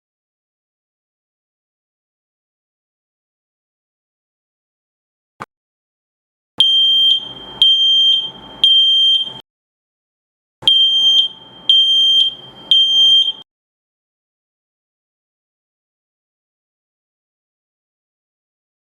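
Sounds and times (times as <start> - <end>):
smoke alarm beeping: 6.6 - 9.4, 10.6 - 13.4.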